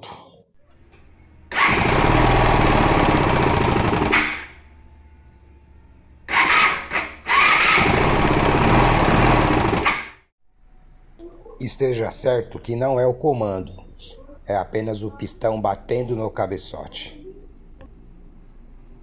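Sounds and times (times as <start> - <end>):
motorcycle engine revving with clatter: 1.5 - 4.6, 6.3 - 10.2.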